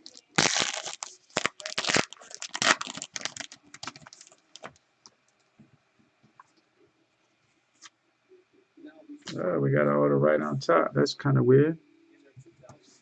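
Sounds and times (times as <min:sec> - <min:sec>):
wrapper tearing and crinkling: 0:00.0 - 0:04.8.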